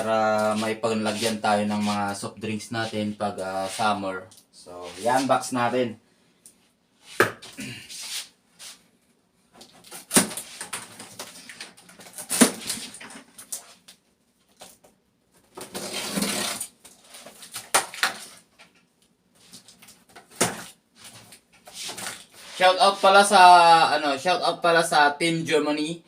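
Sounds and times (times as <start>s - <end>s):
cardboard scraping: 15.5s - 18.5s.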